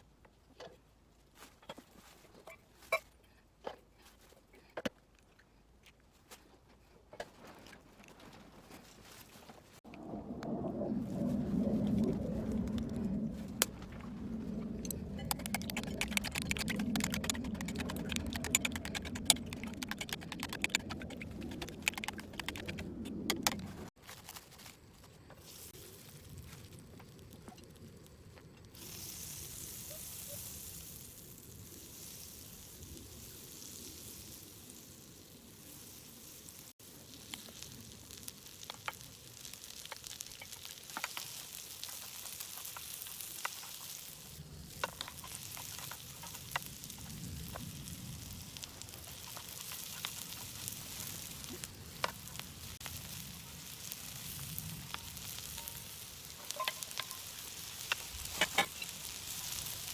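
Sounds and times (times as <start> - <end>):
oil popping: 11.8 - 23.9
food sizzling in a pan: 28.8 - 59.9.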